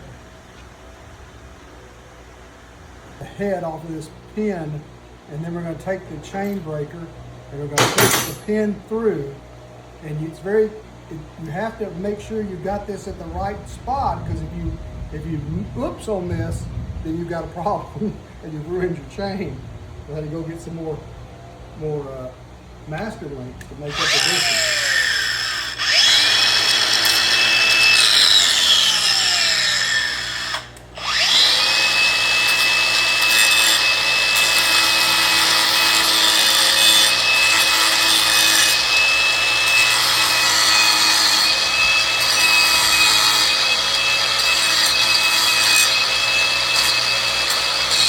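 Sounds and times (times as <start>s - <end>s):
electric grinder whining: 23.0s - 48.0s.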